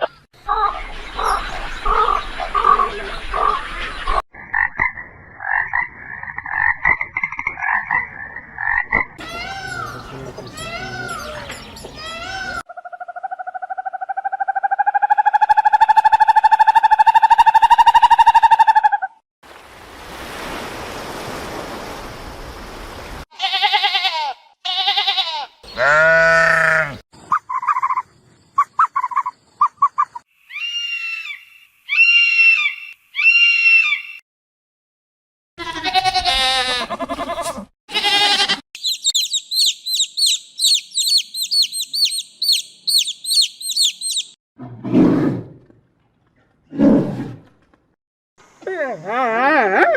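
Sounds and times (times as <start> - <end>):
short animal calls and high chirps: 27.2 - 34.2, 38.8 - 44.4.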